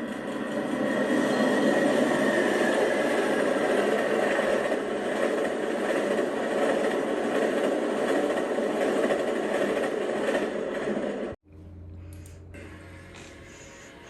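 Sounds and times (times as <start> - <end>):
train running by: 0.0 - 14.0
low hum: 11.4 - 14.0.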